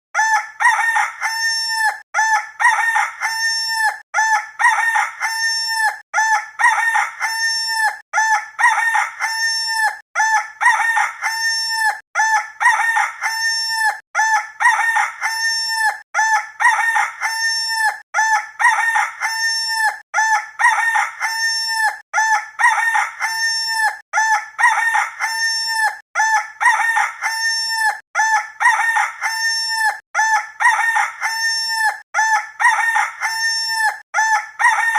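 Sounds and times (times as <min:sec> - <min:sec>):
rooster crowing: 0:00.2 - 0:03.6, 0:32.2 - 0:34.9.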